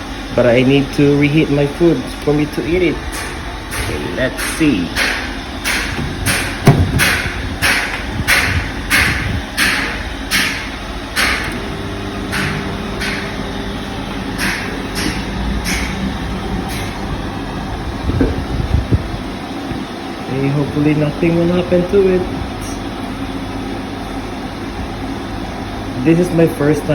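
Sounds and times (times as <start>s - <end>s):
microwave oven humming: 0.0s - 26.9s
sharp knock: 4.4s - 10.6s.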